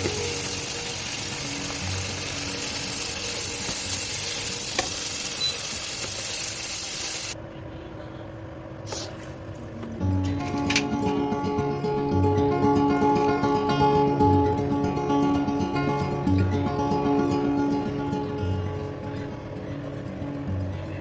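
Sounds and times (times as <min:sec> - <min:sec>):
food sizzling in a pan: 0:00.0 - 0:07.4.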